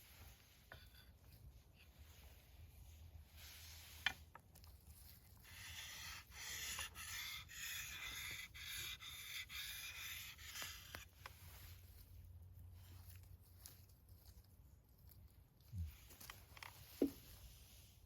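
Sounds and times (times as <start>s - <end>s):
blade rubbing on sharpening stone: 5.5s - 11.2s.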